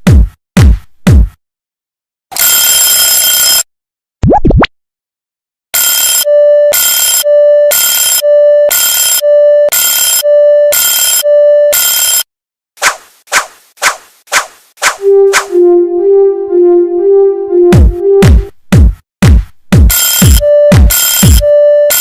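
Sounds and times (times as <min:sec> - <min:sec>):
level crossing warning alarm: 0:05.8 - 0:12.3, 0:19.9 - 0:22.0.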